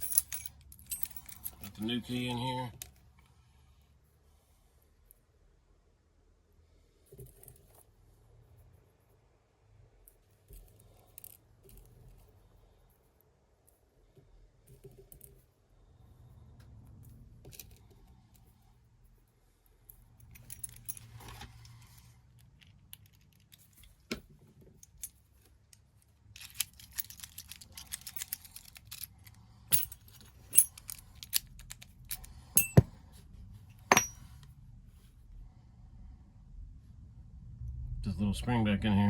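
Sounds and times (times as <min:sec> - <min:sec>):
metal lock parts clicking: 0:00.0 - 0:01.8, 0:20.2 - 0:22.0, 0:24.8 - 0:32.9, 0:33.8 - 0:34.3.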